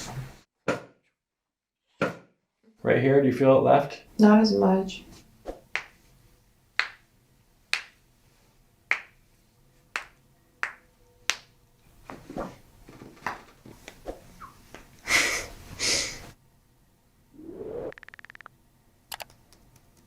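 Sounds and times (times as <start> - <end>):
sharp clicks: 17.9 - 18.5, 19.1 - 19.8.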